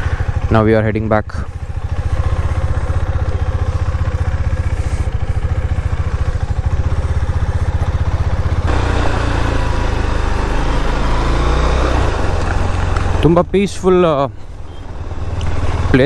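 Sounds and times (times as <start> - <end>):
vehicle engine running: 0.0 - 16.0
rough rushing noise: 8.5 - 14.4.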